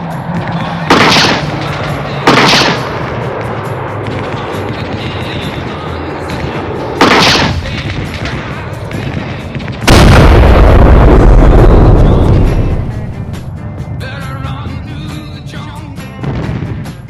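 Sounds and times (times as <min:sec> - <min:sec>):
deep booming blast: 0:00.8 - 0:03.4, 0:06.3 - 0:14.4, 0:16.2 - 0:16.9
short sharp gunshot blast: 0:00.9 - 0:01.5, 0:02.3 - 0:02.9, 0:07.0 - 0:07.6, 0:09.9 - 0:12.6.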